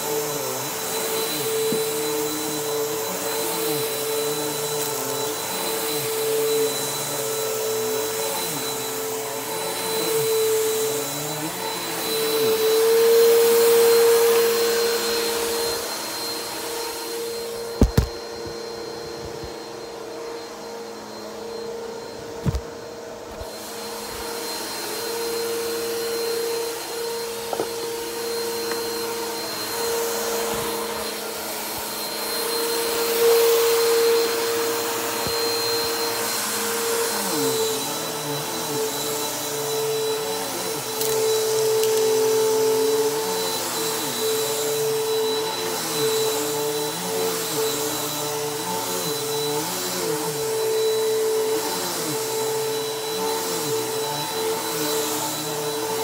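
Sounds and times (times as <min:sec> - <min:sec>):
vacuum cleaner motor whine: 0:00.0 - 0:56.0.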